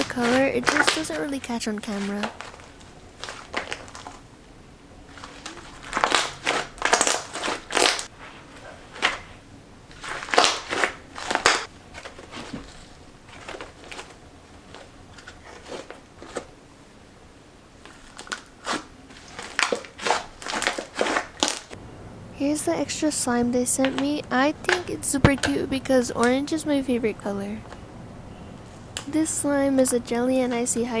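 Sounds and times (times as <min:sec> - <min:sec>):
slime crackling and popping: 0:00.0 - 0:04.2, 0:05.1 - 0:08.1, 0:10.0 - 0:12.3, 0:17.9 - 0:21.8.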